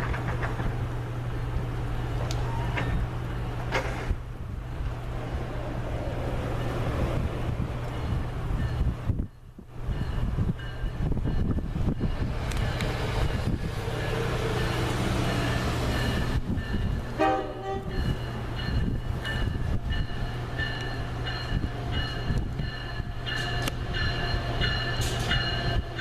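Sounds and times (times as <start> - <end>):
electric train rolling hum: 0.0 - 26.0
train air horn blast: 17.2 - 18.0.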